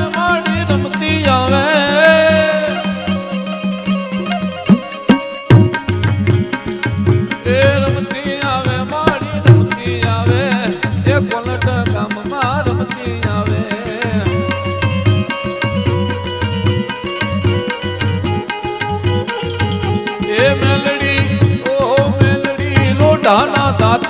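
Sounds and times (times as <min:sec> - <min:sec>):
wavering melody line: 0:03.4 - 0:06.4
steady drum beat: 0:04.6 - 0:24.0.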